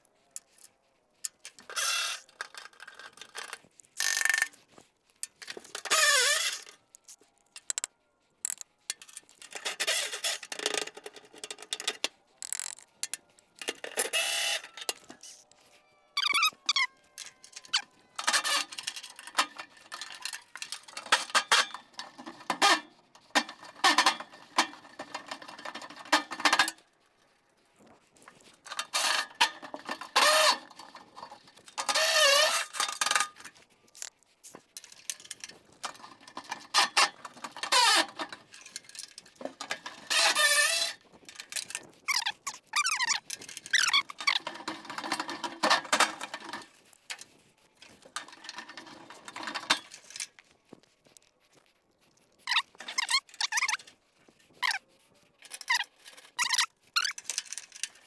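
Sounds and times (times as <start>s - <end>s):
seized bolts squealing: 1.6s - 2.7s, 5.5s - 6.8s, 8.5s - 15.4s, 16.2s - 26.8s, 28.7s - 34.1s, 34.8s - 41.0s, 42.1s - 46.6s, 52.4s - 53.9s, 54.6s - 54.8s, 55.4s - 57.9s
ratchet clicking: 4.0s - 4.6s, 7.6s - 7.9s, 8.5s - 15.3s.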